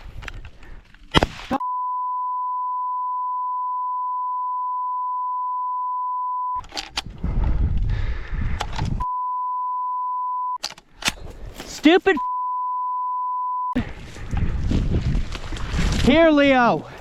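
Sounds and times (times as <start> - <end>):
wind: 0.0 - 1.6, 6.6 - 9.1, 10.6 - 12.2, 13.8 - 17.0
censor bleep tone: 1.6 - 6.6, 9.0 - 10.6, 12.2 - 13.8.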